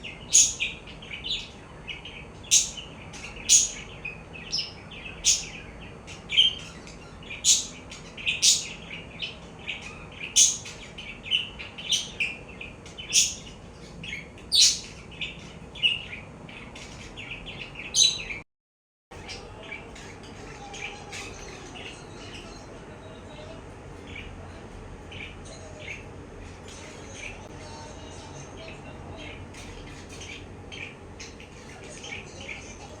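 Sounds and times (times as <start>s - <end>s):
budgerigar chirping: 0.0s - 18.4s
faint chatter: 19.2s - 33.0s.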